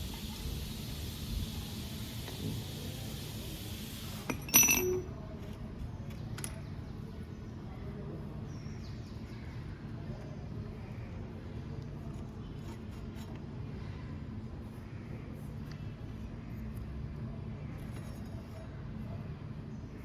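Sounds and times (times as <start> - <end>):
metal clinking: 4.2 - 5.1.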